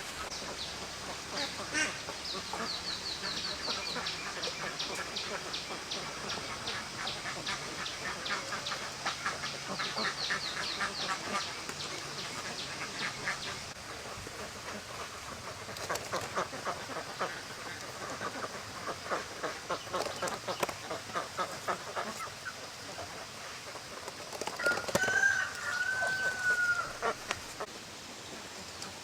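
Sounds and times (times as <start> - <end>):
ducks quacking: 0.2 - 27.7
rooster crowing: 24.6 - 27.2.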